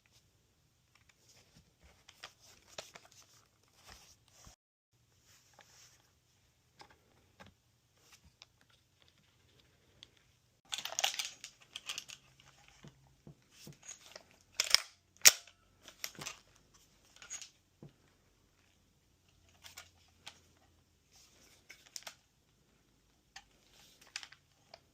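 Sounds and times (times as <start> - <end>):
rifle parts clicking and rattling: 10.7 - 12.9, 13.5 - 17.6, 23.4 - 24.8.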